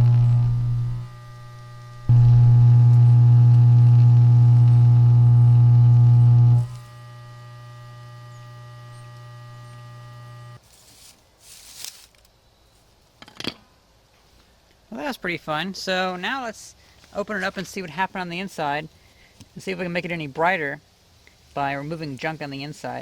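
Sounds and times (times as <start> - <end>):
arc welder buzzing hum: 0.0 - 10.6.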